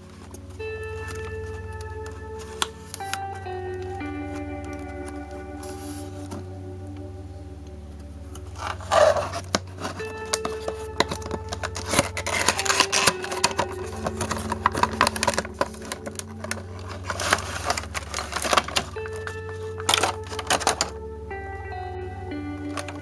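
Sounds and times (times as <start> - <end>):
quiet background music: 0.0 - 23.0
steady low hum: 0.0 - 23.0
clicks and scrapes of plastic packaging: 8.4 - 21.0.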